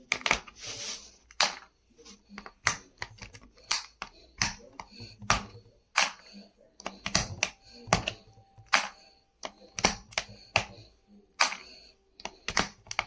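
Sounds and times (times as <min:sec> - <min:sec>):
keyboard parts clicking: 0:06.8 - 0:10.8, 0:11.4 - 0:13.0.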